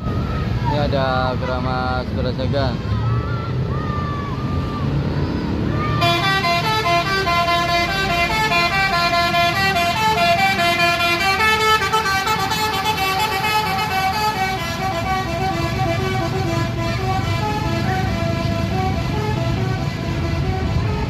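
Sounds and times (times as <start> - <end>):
bus engine running: 0.0 - 21.0
bus horn playing a tune: 5.9 - 21.0.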